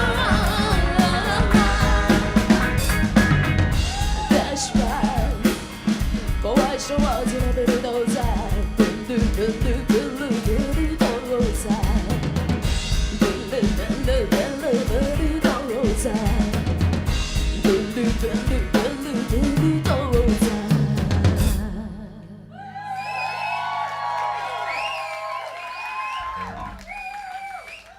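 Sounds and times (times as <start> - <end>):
rock band playing live: 0.0 - 21.8
drum kit hitting snare and bass: 0.0 - 21.9.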